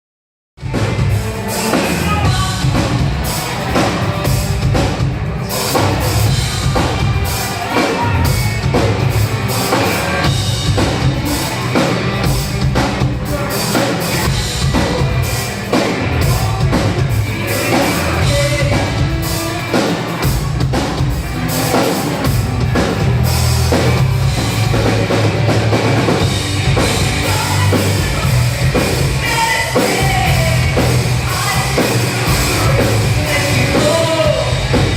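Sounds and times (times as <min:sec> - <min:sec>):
pounding drum kit: 0:00.6 - 0:34.9
rock band playing live: 0:00.6 - 0:34.9
person singing: 0:13.0 - 0:19.8, 0:26.8 - 0:34.9.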